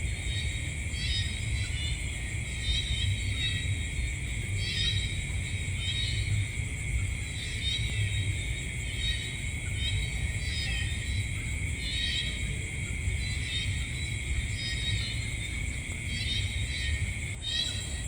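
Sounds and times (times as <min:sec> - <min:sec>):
crickets trilling: 0:00.0 - 0:18.0.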